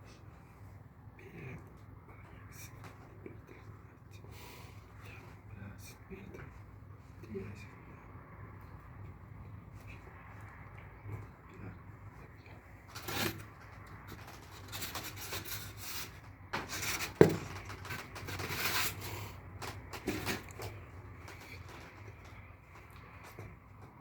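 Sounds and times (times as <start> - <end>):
rubbing and scraping: 12.1 - 24.0.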